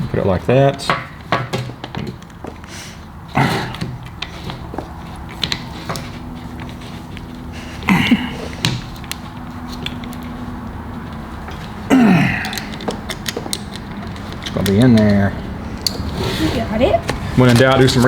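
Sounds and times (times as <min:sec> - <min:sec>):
steady low hum: 0:00.0 - 0:18.0
small clicks of metal parts: 0:08.6 - 0:16.1.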